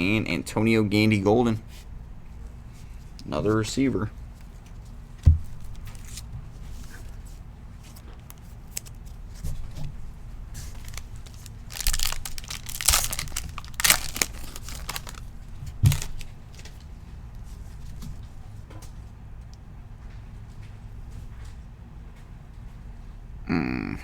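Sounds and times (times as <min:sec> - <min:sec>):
plastic wrapper tearing and crinkling: 0:10.6 - 0:16.8.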